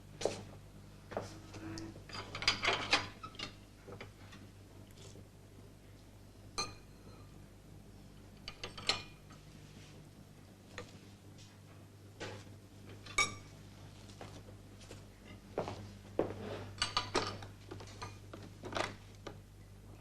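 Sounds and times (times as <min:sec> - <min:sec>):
low electrical hum: 0:00.0 - 0:20.0
crockery and cutlery clinking: 0:13.0 - 0:13.5, 0:16.8 - 0:18.3.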